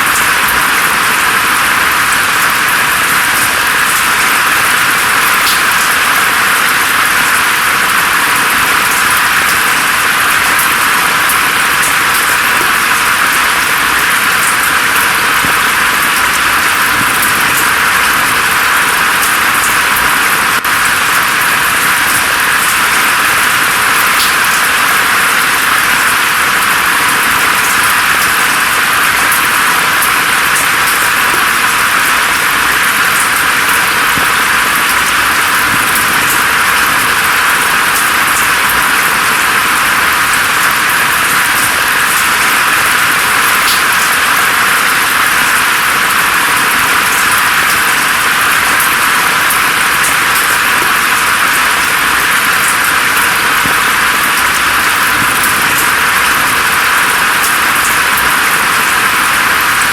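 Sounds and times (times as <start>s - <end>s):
rain falling on foliage: 0.0s - 59.9s.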